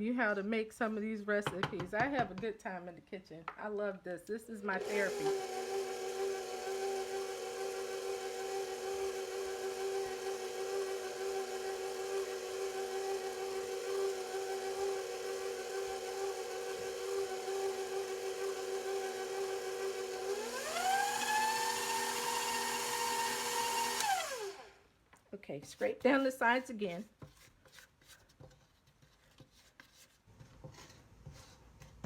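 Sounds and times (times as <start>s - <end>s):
stand mixer motor whine: 4.8s - 24.8s.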